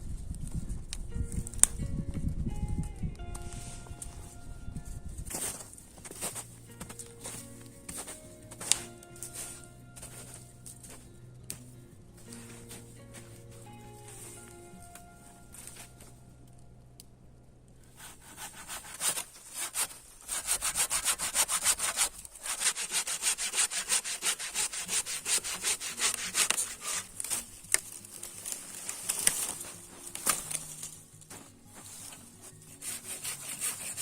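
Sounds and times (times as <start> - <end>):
hand saw cutting wood: 18.0 - 27.9, 32.7 - 34.0.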